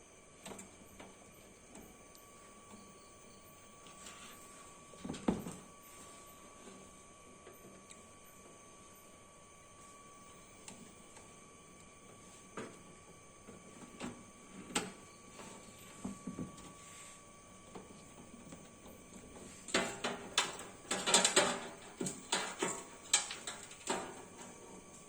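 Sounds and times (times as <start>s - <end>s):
cables clicking into connectors: 19.7s - 24.5s.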